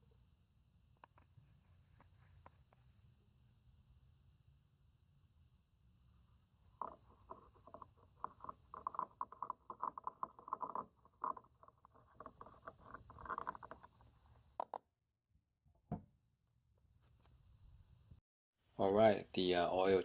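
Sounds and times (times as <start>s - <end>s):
irregular clicking and tapping: 6.8s - 14.8s.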